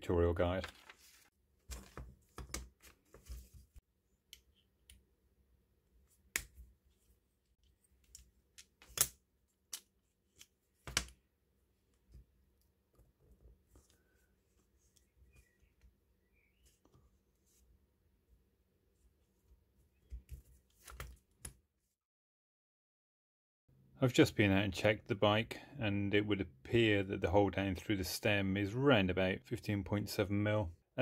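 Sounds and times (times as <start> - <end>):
handling small parts and paper: 0.4 - 5.0, 5.9 - 11.2.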